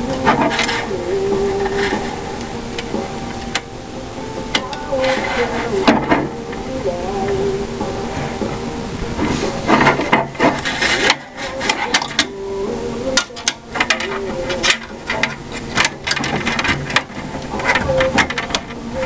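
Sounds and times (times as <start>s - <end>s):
scraping and rubbing: 0.0s - 2.4s, 4.6s - 6.4s, 8.1s - 12.4s, 13.2s - 18.8s
computer parts clicking and knocking: 13.2s - 18.8s.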